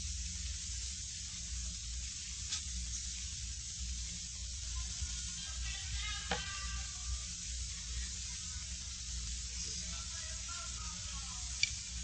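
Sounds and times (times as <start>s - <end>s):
low electrical hum: 0.0s - 12.0s
recording hiss: 0.0s - 12.0s.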